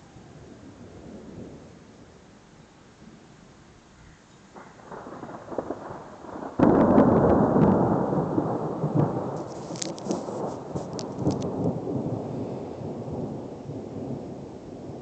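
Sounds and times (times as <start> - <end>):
thunder clap and rumble: 4.6 - 15.0.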